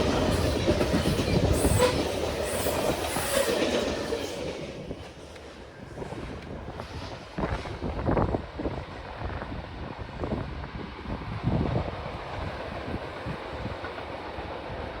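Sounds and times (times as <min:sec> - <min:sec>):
train wheels clacking over rail joints: 0:00.0 - 0:07.9.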